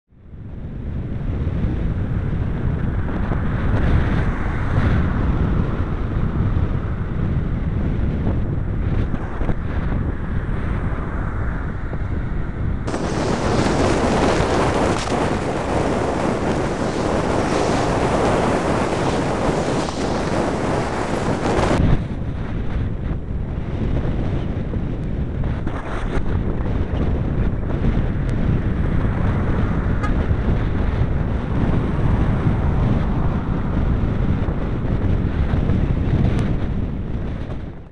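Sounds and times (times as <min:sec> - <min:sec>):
wind buffeting microphone: 0:00.1 - 0:37.9
road noise: 0:00.2 - 0:37.7
hissy rush: 0:12.9 - 0:21.8.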